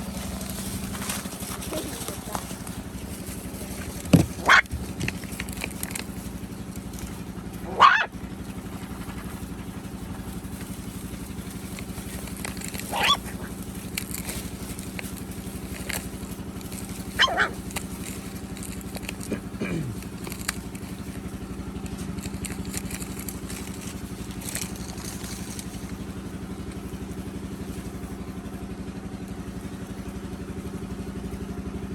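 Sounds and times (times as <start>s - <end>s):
low engine-like hum: 0.0s - 31.9s
loud animal calls: 3.8s - 5.5s, 7.5s - 9.6s, 12.5s - 13.9s, 17.1s - 17.8s.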